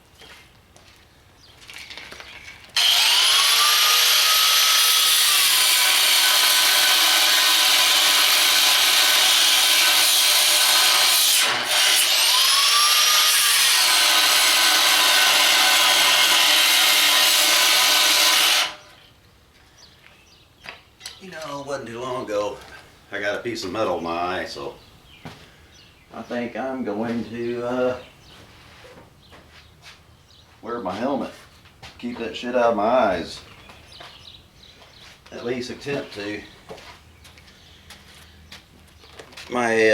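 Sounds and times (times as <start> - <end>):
angle grinder cutting steel: 2.8 - 19.0.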